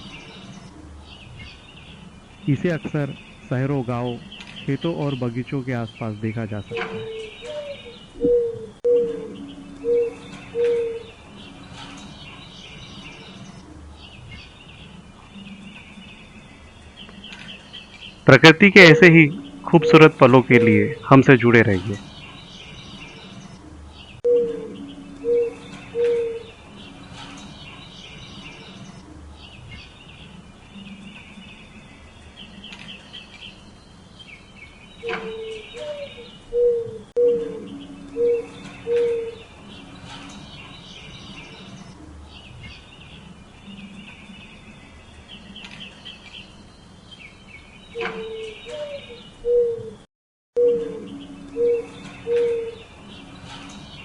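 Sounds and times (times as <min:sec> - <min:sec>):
birds chirping: 0:00.0 - 0:54.0
dove cooing: 0:06.5 - 0:11.5, 0:18.8 - 0:21.1, 0:24.2 - 0:26.9, 0:35.0 - 0:39.8, 0:48.0 - 0:53.9.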